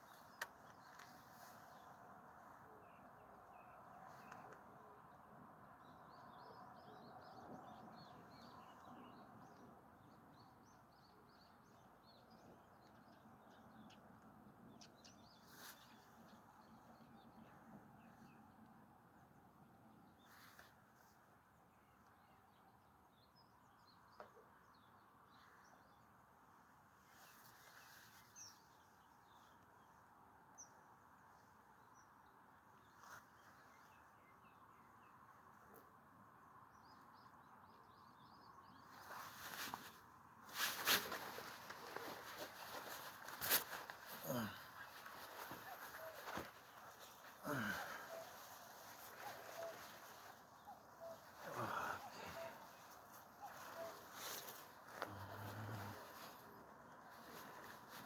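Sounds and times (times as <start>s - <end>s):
faint sharp clicks: 0.3s - 1.2s
small birds chirping: 36.6s - 58.0s.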